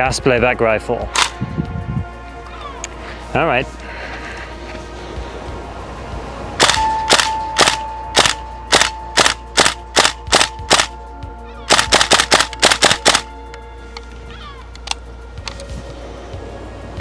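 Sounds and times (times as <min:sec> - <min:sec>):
airsoft rifle shots: 0:01.2 - 0:01.4, 0:06.6 - 0:11.0, 0:11.7 - 0:13.3.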